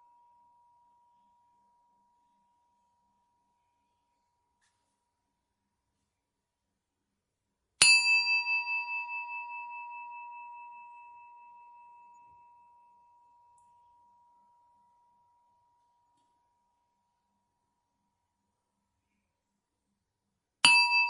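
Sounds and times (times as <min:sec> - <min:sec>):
metal bell ringing: 0:20.7 - 0:21.0.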